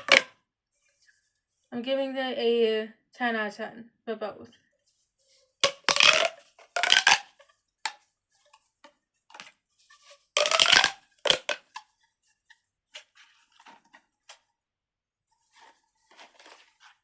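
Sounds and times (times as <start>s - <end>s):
plastic pop tube popping: 0.0s - 0.4s, 5.6s - 8.0s, 10.4s - 11.9s
plastic handling: 4.8s - 14.6s, 15.2s - 17.0s.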